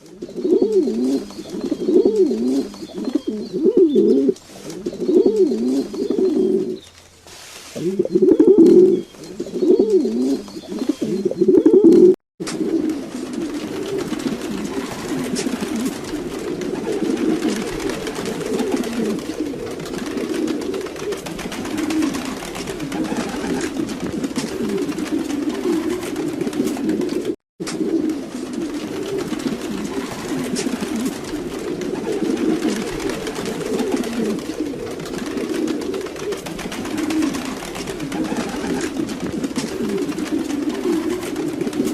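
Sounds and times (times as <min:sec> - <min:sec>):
pigeons cooing: 0:00.0 - 0:41.9.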